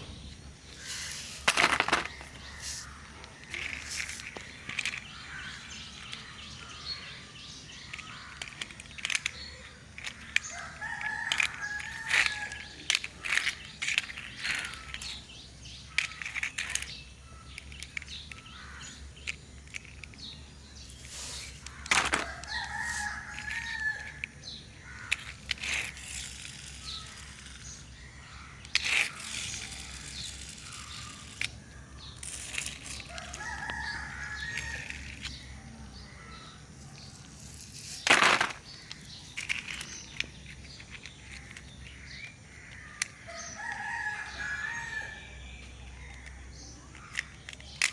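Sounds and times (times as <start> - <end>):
rooster crowing: 22.2 - 24.2, 33.1 - 35.0, 43.3 - 45.4.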